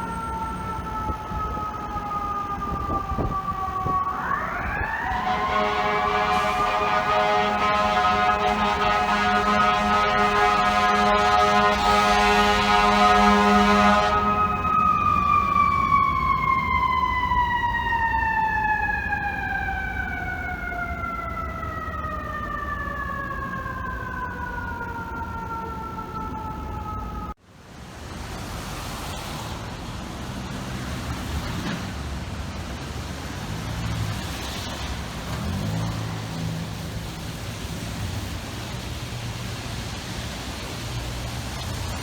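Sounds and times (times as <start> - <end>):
street traffic: 0.0 - 42.0
fire truck air horn blast: 4.9 - 15.2
mechanical siren winding down: 13.1 - 27.4.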